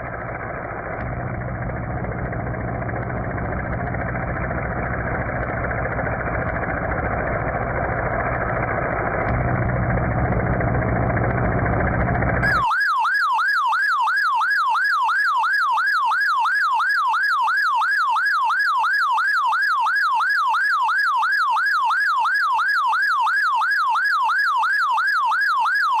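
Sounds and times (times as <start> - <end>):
engine-like rumble: 0.0 - 12.5
electronic yelp siren: 0.0 - 26.0.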